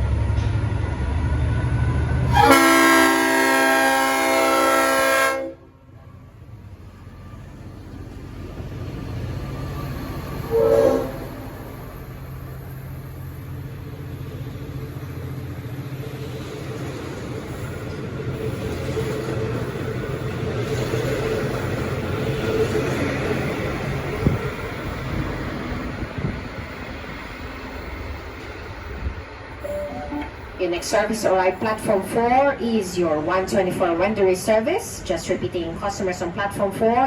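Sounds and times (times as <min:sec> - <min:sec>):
train engine hum: 0:00.0 - 0:37.0
air horn blast: 0:02.3 - 0:05.7, 0:10.5 - 0:11.4
train wheel noise: 0:05.9 - 0:37.0.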